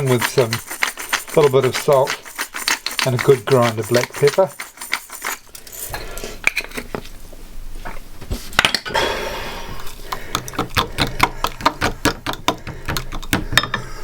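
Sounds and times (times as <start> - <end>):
utensil scraping mixing bowl: 0.0 - 6.9, 9.8 - 14.0.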